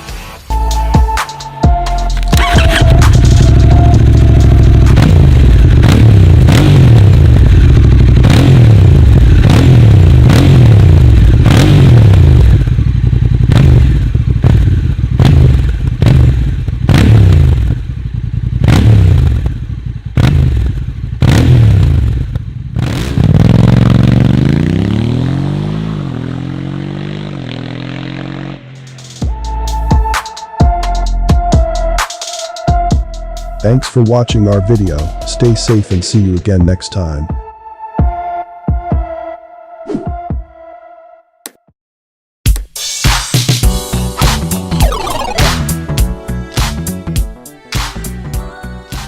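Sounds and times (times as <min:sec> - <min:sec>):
motorcycle engine revving: 0:02.1 - 0:29.4.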